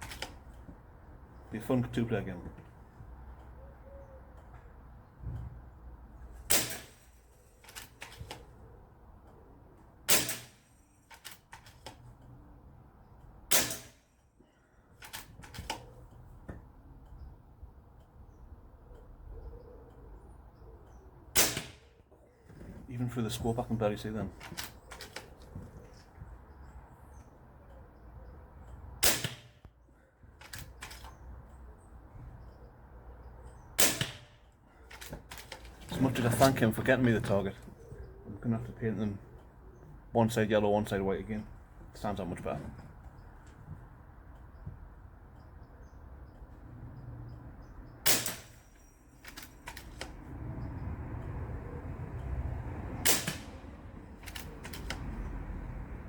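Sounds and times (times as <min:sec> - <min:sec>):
air rifle shots: 0:06.5 - 0:08.4, 0:10.1 - 0:10.8, 0:13.5 - 0:14.0, 0:21.3 - 0:21.9, 0:29.0 - 0:29.6, 0:33.8 - 0:35.6, 0:48.0 - 0:48.7, 0:53.0 - 0:53.6.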